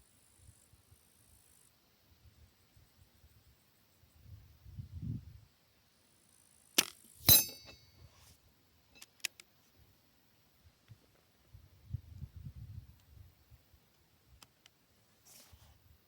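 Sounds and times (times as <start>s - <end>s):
metallic clink with ring: 7.2s - 8.0s.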